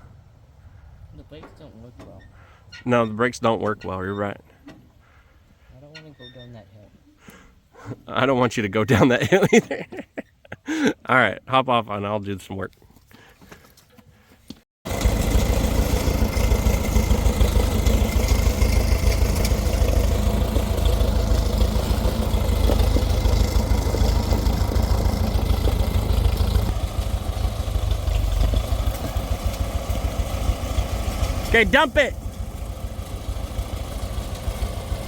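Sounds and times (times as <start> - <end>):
backhoe engine running: 14.9 - 35.0.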